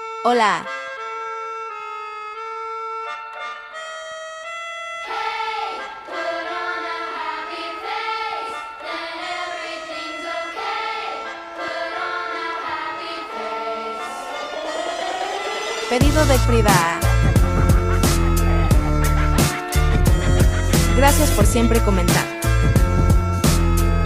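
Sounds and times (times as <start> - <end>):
held synth notes: 1.8 - 24.0.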